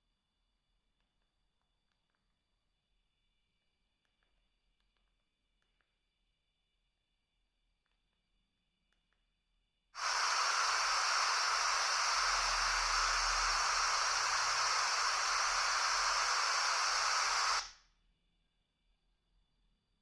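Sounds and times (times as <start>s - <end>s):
steady static hiss: 10.0s - 17.7s.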